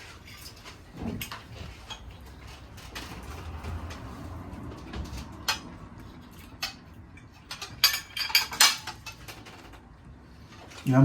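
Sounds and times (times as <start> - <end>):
tableware clicking and rattling: 5.0 - 9.8.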